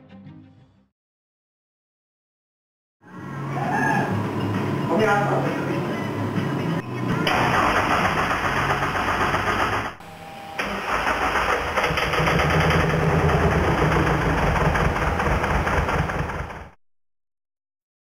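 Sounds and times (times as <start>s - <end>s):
diesel engine starting and running: 3.1s - 16.8s.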